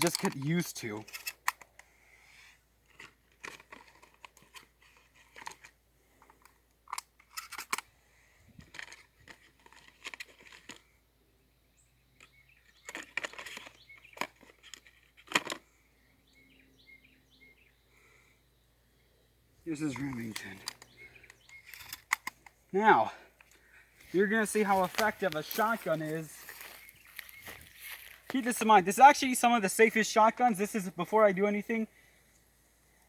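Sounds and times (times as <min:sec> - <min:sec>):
shotgun shells clicking into gun: 0:00.0 - 0:01.8, 0:06.4 - 0:07.9, 0:19.9 - 0:22.5
rustling: 0:23.6 - 0:28.6.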